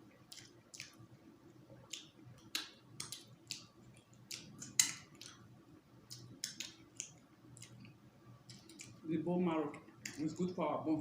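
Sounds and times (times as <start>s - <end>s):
mouth smacks and sucking clicks: 0.3s - 1.0s, 1.8s - 5.5s, 6.1s - 9.0s.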